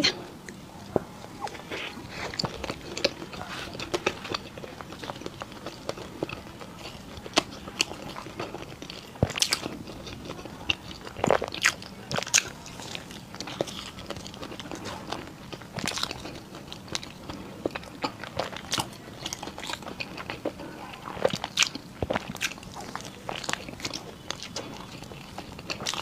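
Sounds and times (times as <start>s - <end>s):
crunchy pastry chewing: 0.0s - 26.0s.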